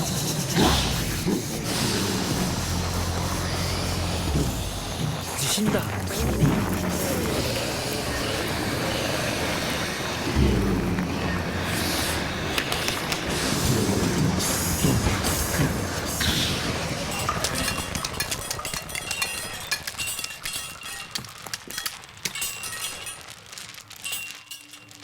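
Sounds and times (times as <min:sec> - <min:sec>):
clatter of cracks and clicks: 0:11.8 - 0:25.0.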